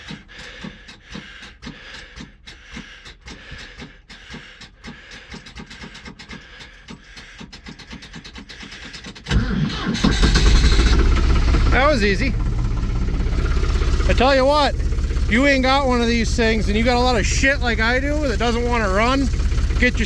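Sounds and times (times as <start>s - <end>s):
engine cranking on starter: 0.0s - 20.0s
engine firing up: 9.3s - 20.0s.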